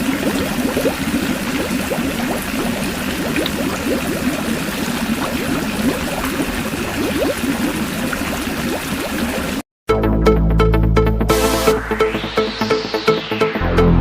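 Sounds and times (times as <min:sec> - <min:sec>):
water running and gurgling: 0:00.0 - 0:09.6.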